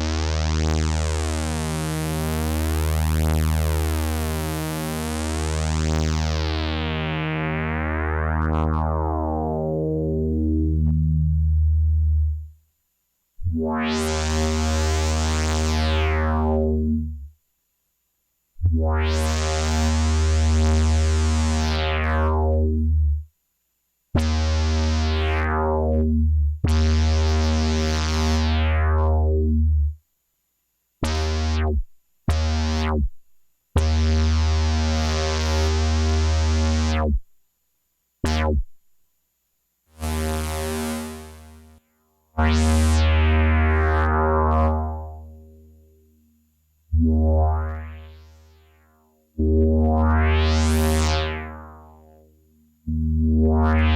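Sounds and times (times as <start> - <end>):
low buzzy synthesizer note: 8.4 - 12.5, 13.4 - 17.3, 20.0 - 23.2, 24.2 - 30.0, 42.4 - 45.9, 46.9 - 53.9.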